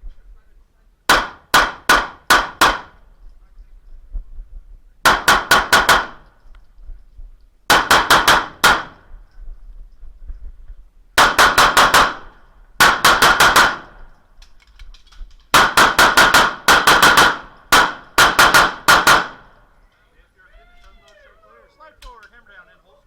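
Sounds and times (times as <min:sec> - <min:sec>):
airsoft gun shots: 0:01.1 - 0:03.0, 0:05.0 - 0:06.2, 0:07.7 - 0:09.1, 0:11.2 - 0:14.0, 0:15.5 - 0:19.5.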